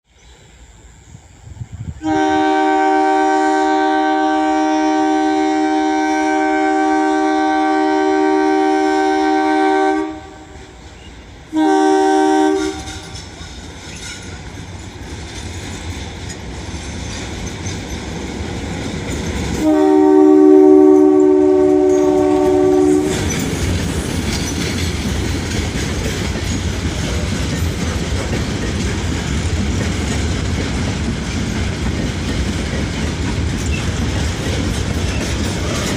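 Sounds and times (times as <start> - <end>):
train rumble: 0.3 - 35.9
locomotive two-tone horn: 2.0 - 10.8, 11.5 - 13.2, 19.6 - 23.4
wagons clickety-clack: 12.8 - 19.6, 23.0 - 35.9.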